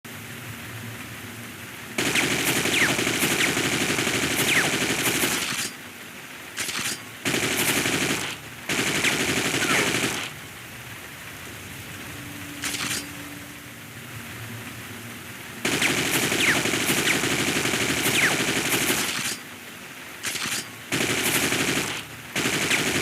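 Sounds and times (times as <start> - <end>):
automatic rifle firing bursts: 2.0 - 5.8, 6.6 - 10.4, 15.6 - 19.4, 20.2 - 23.0.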